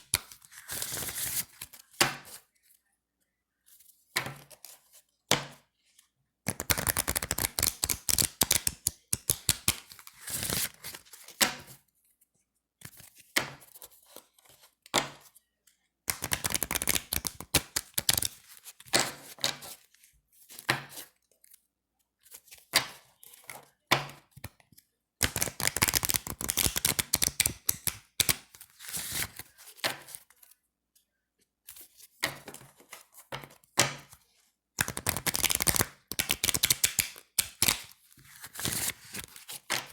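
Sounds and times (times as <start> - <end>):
playing cards riffle-shuffled: 0.1 - 1.7, 6.5 - 11.1, 16.1 - 18.7, 25.2 - 29.6, 34.8 - 39.9
cards tapping: 6.5 - 10.7, 16.1 - 18.4, 25.2 - 29.4, 34.8 - 39.9.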